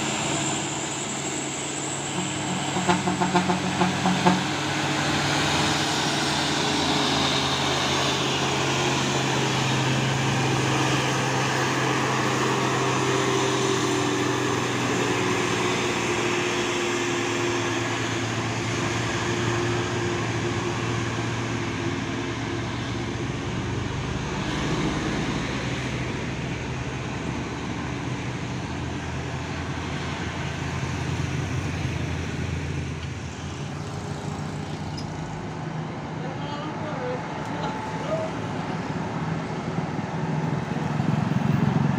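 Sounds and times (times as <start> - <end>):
diesel truck engine under load: 0.0 - 41.9
road traffic noise: 0.0 - 41.9.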